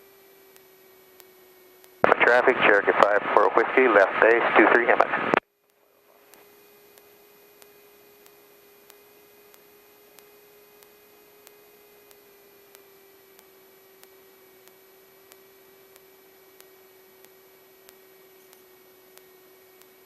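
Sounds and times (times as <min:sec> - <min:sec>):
faint regular ticks: 0:00.5 - 0:02.1, 0:05.6 - 0:20.0.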